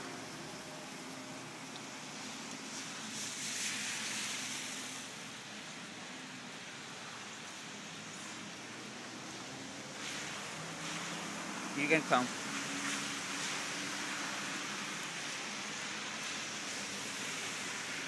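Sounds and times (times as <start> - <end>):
heavy rain: 0.0 - 18.0
running floodwater: 0.0 - 18.0.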